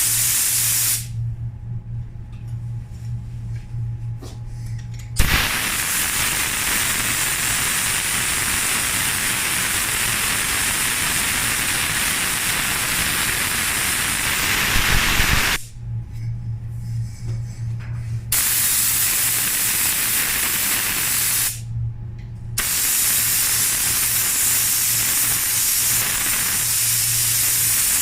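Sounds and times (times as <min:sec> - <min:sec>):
paint spray gun hissing: 0:00.0 - 0:01.1, 0:05.2 - 0:15.6, 0:18.3 - 0:21.6, 0:22.6 - 0:28.0.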